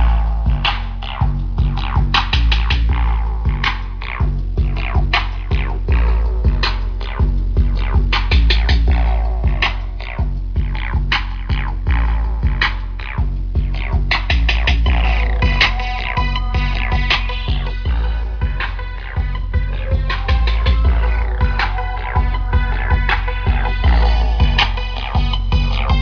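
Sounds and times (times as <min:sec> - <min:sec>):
loud electronic music with bass: 0:00.0 - 0:26.0
record scratching effects: 0:00.0 - 0:26.0.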